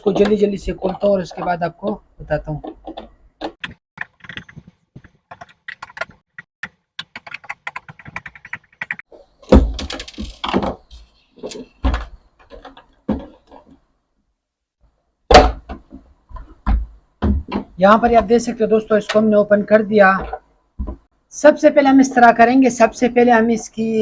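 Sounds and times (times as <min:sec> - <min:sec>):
plastic housing knocks and thuds: 0:09.4 - 0:13.9, 0:15.3 - 0:18.5, 0:20.2 - 0:21.1.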